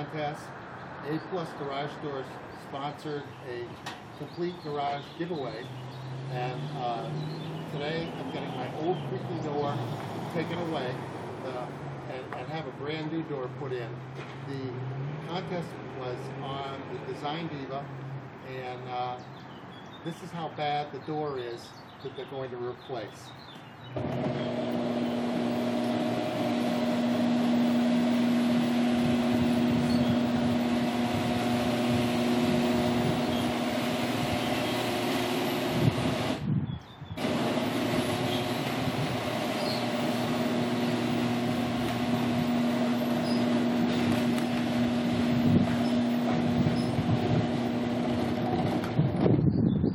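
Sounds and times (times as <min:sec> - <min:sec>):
garage door opener motor hum: 0:24.0 - 0:36.4, 0:37.2 - 0:49.3
garage door rattling and creaking: 0:37.2 - 0:49.3.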